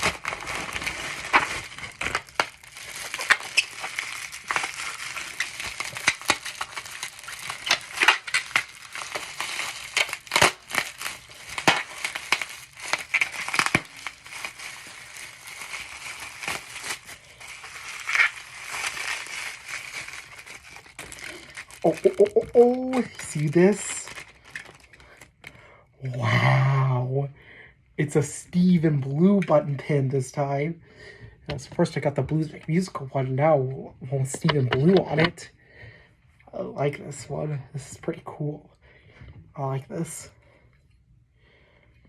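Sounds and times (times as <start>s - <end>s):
packaging crumpling and crackling: 0.0s - 25.6s, 34.1s - 35.5s.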